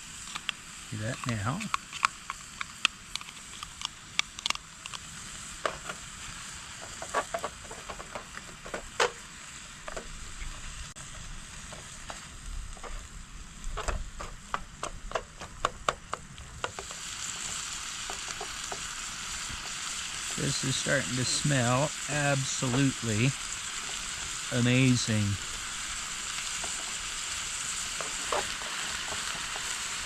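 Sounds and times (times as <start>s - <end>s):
meat sizzling in a frying pan: 0.0s - 30.0s
utensil clicking and scraping pan: 0.2s - 6.0s, 6.7s - 9.2s, 13.7s - 21.8s, 26.2s - 30.0s.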